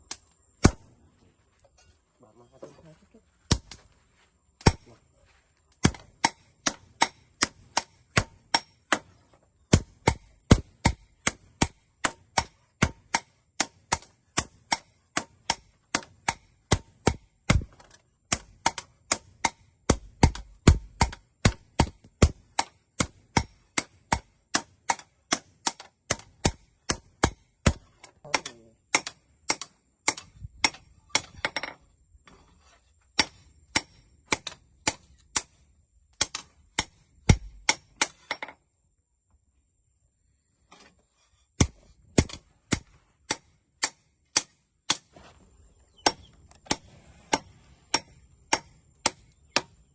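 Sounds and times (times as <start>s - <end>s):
hammer striking steel on anvil: 21.8s - 31.8s, 46.0s - 49.7s.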